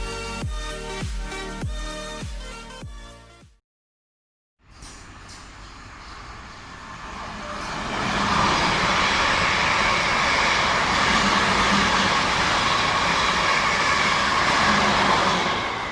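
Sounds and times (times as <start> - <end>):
electric train hum: 4.6 - 15.9
wheel and rail noise: 4.6 - 15.9.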